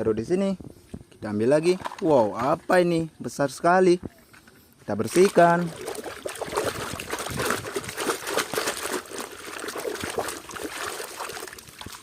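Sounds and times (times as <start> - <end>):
water trickling and splashing: 5.0 - 12.0.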